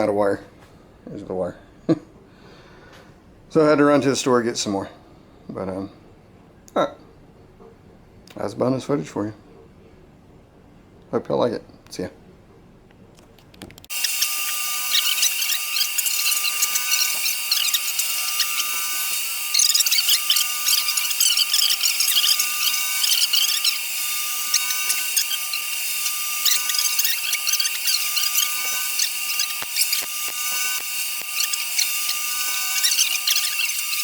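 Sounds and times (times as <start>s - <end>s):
welding arc crackling and sizzling: 13.9s - 34.0s.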